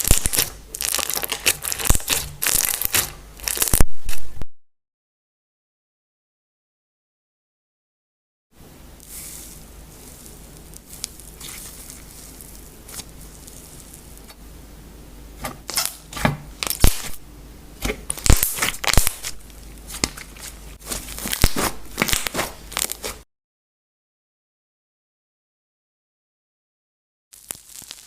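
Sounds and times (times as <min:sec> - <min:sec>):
slime sticky crackles and pops: 0:00.0 - 0:03.9, 0:10.2 - 0:14.4, 0:16.6 - 0:17.2, 0:18.1 - 0:23.2, 0:27.4 - 0:28.0.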